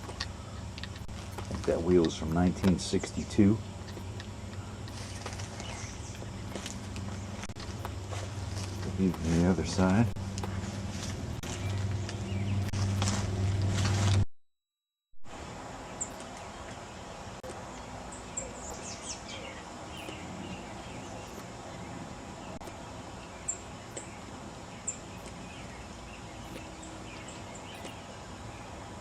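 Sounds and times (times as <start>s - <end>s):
outdoor background noise: 0.0s - 14.3s, 15.3s - 29.0s
bird chirps and calls: 16.0s - 28.8s.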